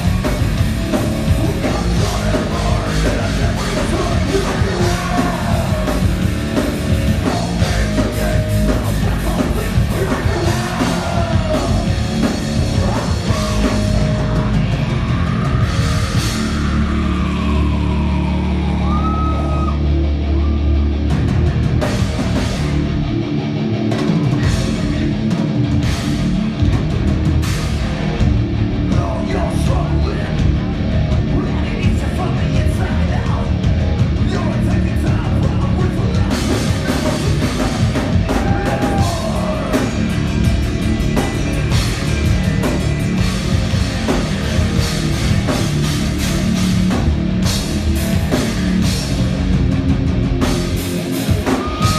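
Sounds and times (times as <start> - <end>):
heavy rock band playing: 0.0 - 51.9
person singing: 1.3 - 19.8, 34.2 - 40.5.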